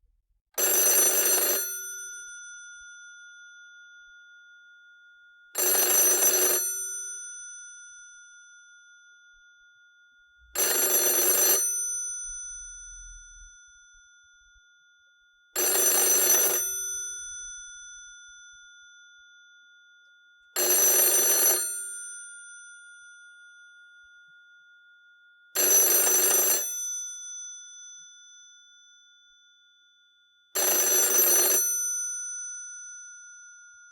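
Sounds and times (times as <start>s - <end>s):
telephone bell ringing: 0.6s - 3.8s, 5.1s - 8.8s, 10.5s - 13.2s, 15.5s - 18.0s, 20.4s - 23.6s, 24.3s - 33.9s.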